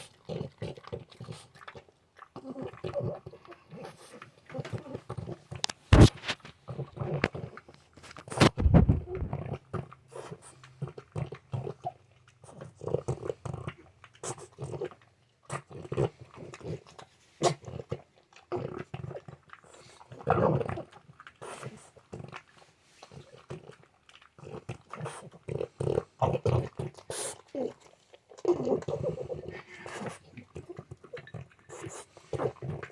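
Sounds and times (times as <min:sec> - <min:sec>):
dog grunting: 0:24.4 - 0:32.9.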